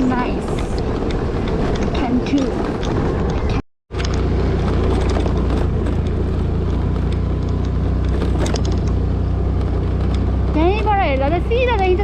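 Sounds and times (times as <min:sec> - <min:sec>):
wind and road noise: 0:00.0 - 0:12.0
scooter engine running: 0:03.9 - 0:12.0.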